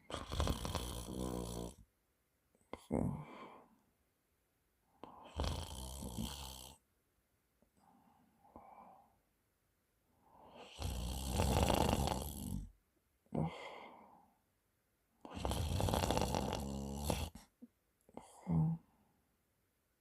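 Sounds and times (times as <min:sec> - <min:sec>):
man snoring loudly: 0:00.1 - 0:01.8, 0:05.2 - 0:06.8, 0:10.5 - 0:12.7, 0:15.3 - 0:17.4
soft breath: 0:07.8 - 0:09.2, 0:13.4 - 0:14.4.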